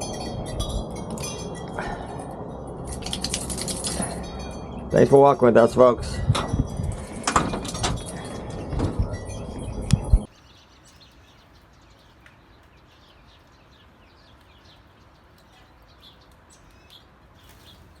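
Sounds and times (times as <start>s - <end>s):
clatter: 2.8s - 4.7s
small birds chirping: 8.0s - 18.0s.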